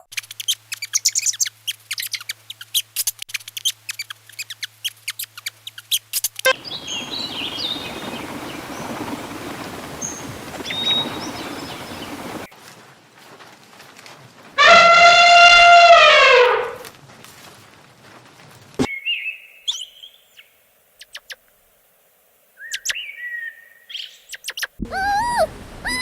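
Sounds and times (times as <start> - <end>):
small birds chirping: 0.0 - 12.5, 18.8 - 21.5, 22.5 - 26.0
high bird whistles: 6.5 - 9.1, 10.0 - 12.4
steady rushing background: 6.5 - 12.5.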